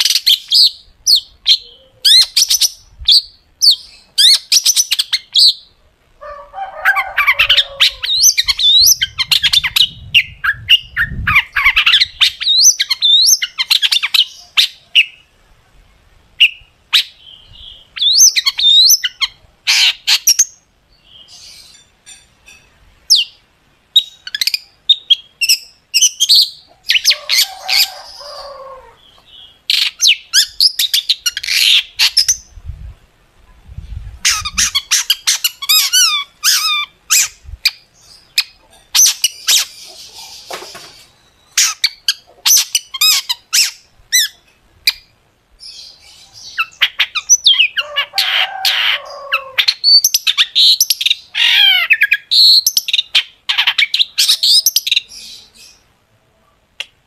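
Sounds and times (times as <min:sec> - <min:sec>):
bird singing whistled notes: 0:07.4 - 0:15.2.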